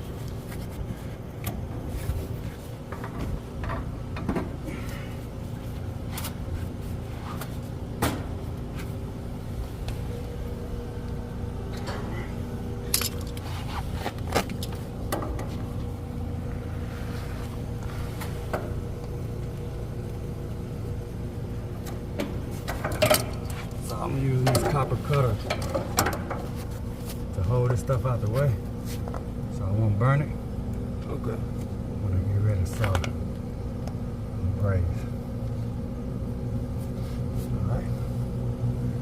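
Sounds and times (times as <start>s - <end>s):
engine humming: 0.0s - 39.0s
tools and metal parts clinking: 12.9s - 13.5s, 22.7s - 23.6s.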